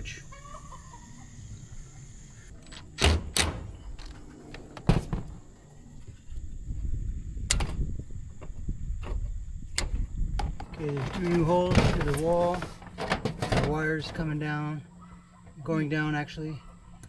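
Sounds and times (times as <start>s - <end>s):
sharp knocks and clicks: 2.6s - 5.3s.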